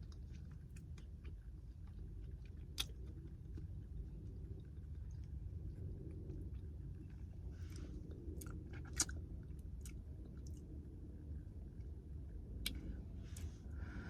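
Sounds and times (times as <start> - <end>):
person chewing: 0.0 - 10.7
steady low rumble: 0.0 - 14.0.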